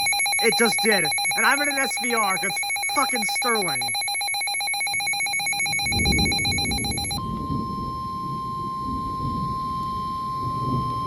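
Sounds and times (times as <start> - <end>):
fast-pulsing electronic ringing: 0.0 - 7.3
steady warning alarm tone: 0.0 - 11.0.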